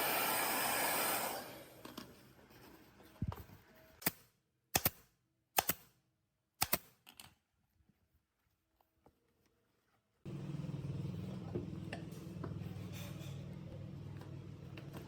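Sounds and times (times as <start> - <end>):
hiss: 0.0 - 1.6
sharp clicks: 6.6 - 7.0.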